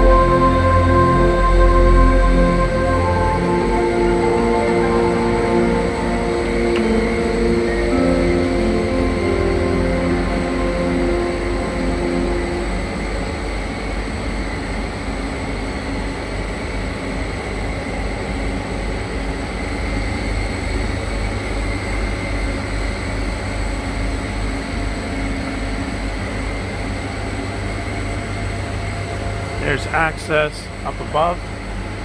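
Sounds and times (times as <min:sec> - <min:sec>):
faint high whining tones: 0:00.0 - 0:13.9
constant hiss: 0:29.6 - 0:31.6.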